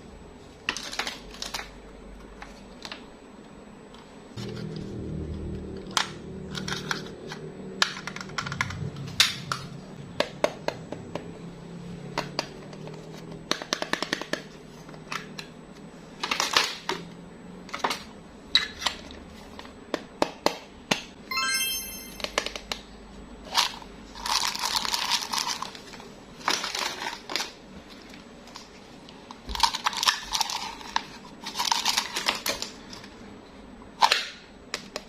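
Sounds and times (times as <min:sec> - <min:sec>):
short electronic beep: 0:21.3 - 0:22.4
candies and plastic clicking: 0:23.5 - 0:27.6, 0:28.6 - 0:32.8.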